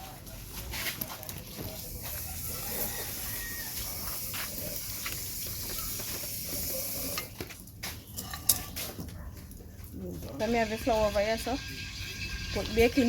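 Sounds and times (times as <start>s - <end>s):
oil hissing in a pot: 1.7s - 7.4s, 10.4s - 13.0s.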